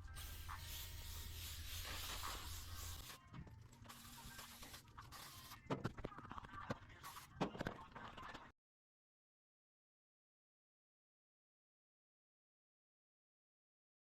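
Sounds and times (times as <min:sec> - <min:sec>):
aerosol can spraying: 0:00.0 - 0:03.2, 0:03.9 - 0:05.6.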